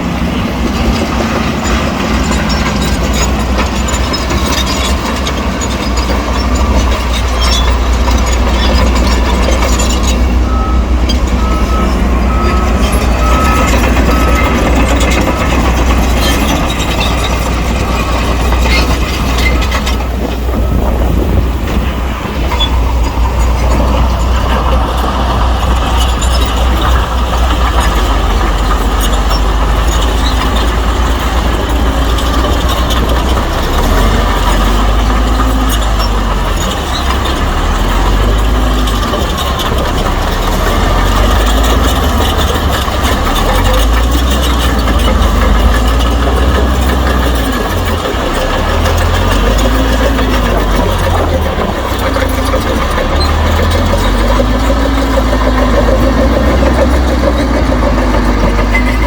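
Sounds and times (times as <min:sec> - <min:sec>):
heavy diesel machinery running: 0:00.0 - 0:59.0
reversing alarm beeps: 0:09.8 - 0:17.3.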